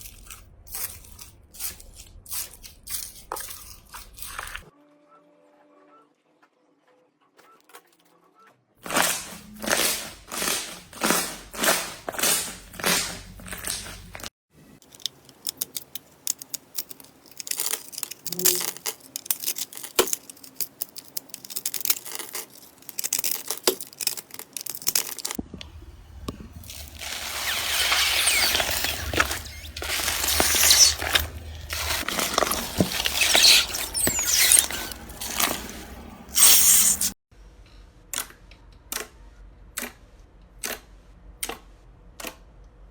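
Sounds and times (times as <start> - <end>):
slime squishing: 8.8 - 25.4, 26.6 - 37.2.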